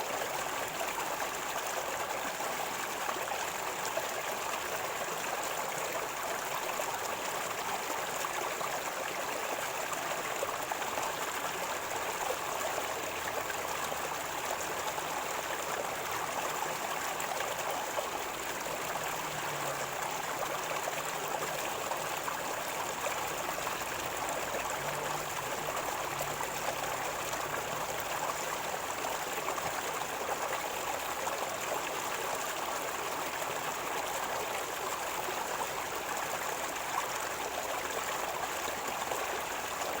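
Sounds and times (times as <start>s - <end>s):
river water gurgling: 0.0s - 40.0s.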